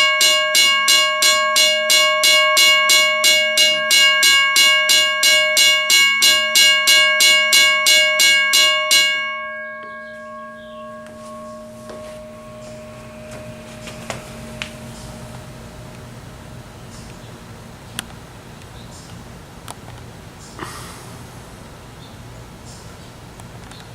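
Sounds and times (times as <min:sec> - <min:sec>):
railroad crossing bell ringing: 0:00.0 - 0:17.1
low hum: 0:09.2 - 0:18.5.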